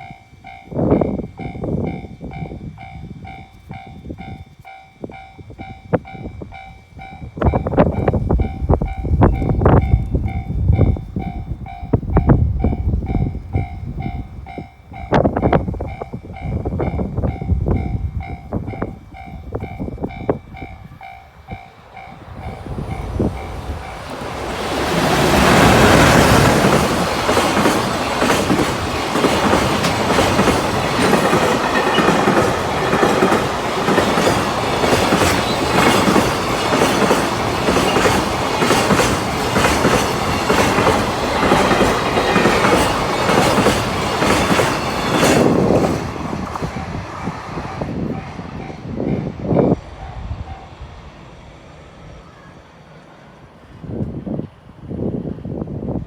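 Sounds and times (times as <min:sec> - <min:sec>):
freight train passing: 0:00.0 - 0:56.0
wagons clattering over rail joints: 0:23.8 - 0:46.9.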